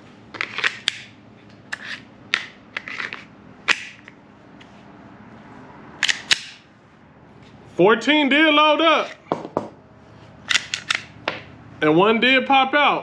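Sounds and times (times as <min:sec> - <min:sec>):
cartridges clicking into magazine: 0:06.0 - 0:06.6, 0:10.5 - 0:11.2.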